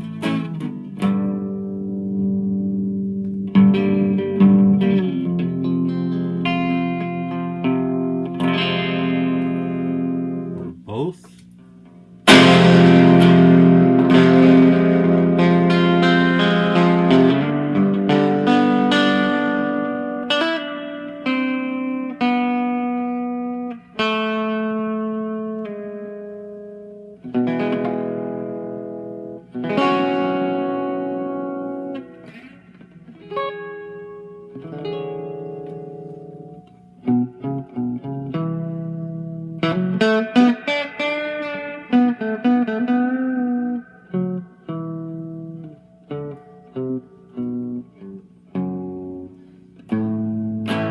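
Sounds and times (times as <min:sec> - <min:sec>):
electric guitar chords and notes: 0:00.0 - 0:11.0, 0:11.6 - 0:50.9.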